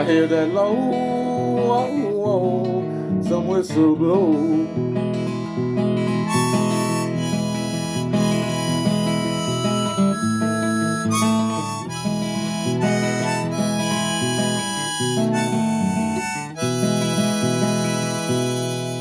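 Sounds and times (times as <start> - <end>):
harmonica melody: 4.8 - 19.0.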